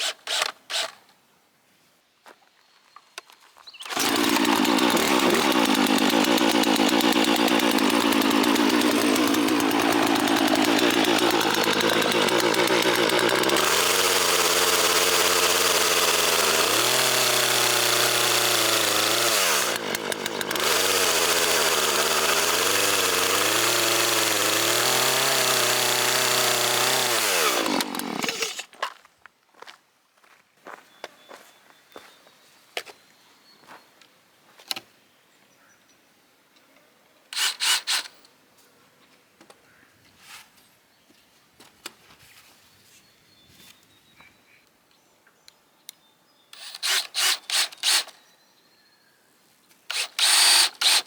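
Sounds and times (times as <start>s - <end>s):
chainsaw cutting wood: 0.0s - 1.0s, 3.8s - 28.8s, 37.3s - 38.2s, 46.6s - 48.2s, 49.9s - 51.0s.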